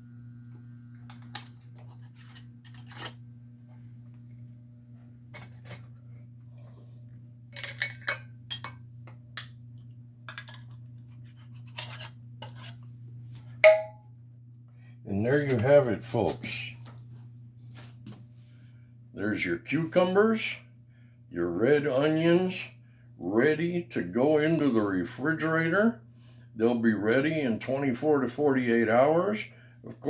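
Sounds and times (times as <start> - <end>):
glass jars clinking: 7.6 - 8.8, 13.6 - 14.0
sharp ringing glass clink: 13.6 - 14.0.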